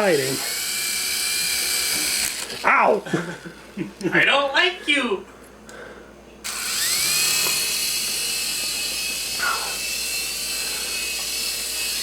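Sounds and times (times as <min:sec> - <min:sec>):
toy helicopter rotor whine: 0:00.0 - 0:02.7, 0:06.4 - 0:12.0.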